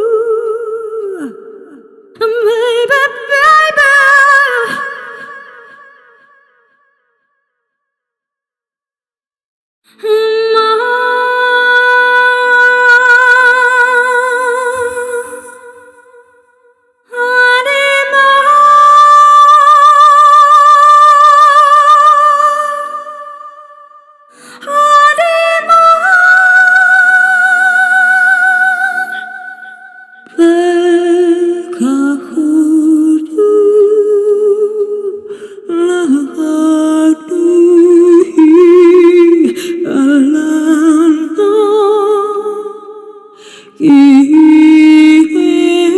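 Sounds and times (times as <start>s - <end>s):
woman singing wordless vowels: 0.0s - 5.9s, 9.9s - 45.9s.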